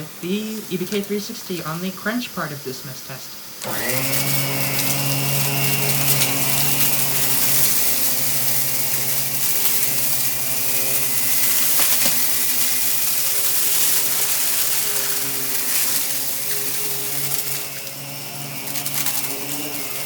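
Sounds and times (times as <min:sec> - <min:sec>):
vacuum motor humming: 0:00.0 - 0:02.6, 0:03.4 - 0:20.0
clicks of debris: 0:05.9 - 0:20.0.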